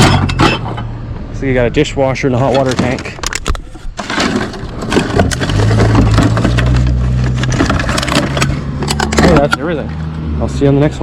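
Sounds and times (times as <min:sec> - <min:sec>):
rattling and clattering: 0:00.0 - 0:01.0, 0:02.4 - 0:09.7
vehicle engine humming: 0:00.0 - 0:11.0.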